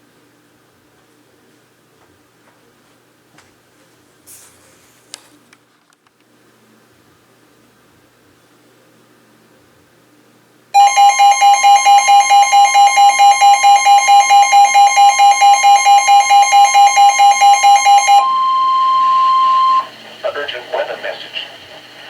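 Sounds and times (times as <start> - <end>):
beeping alarm tone: 10.8 - 20.0
steady high tone: 10.8 - 20.4.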